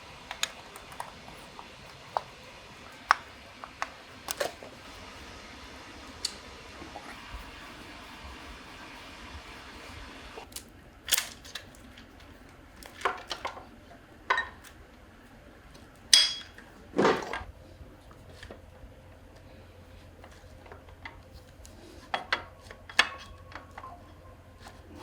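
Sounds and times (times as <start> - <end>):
metal tools clinking: 16.2 - 16.6.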